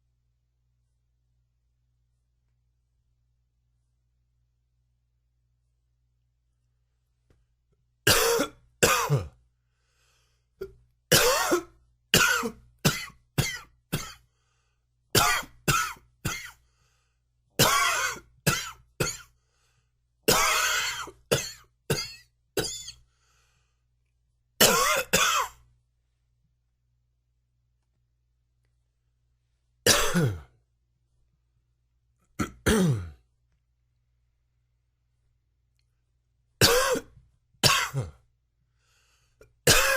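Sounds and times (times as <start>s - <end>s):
man coughing: 8.1s - 9.4s, 11.1s - 14.2s, 15.2s - 16.6s, 17.6s - 19.3s, 20.3s - 23.0s, 24.6s - 25.6s, 29.9s - 30.5s, 32.4s - 33.2s, 36.6s - 38.2s, 39.6s - 39.9s.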